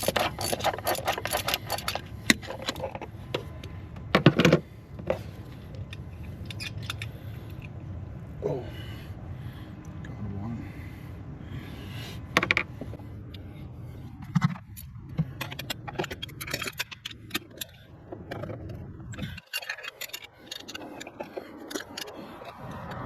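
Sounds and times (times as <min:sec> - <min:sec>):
metallic clicks of hand tools: 0:00.0 - 0:02.9.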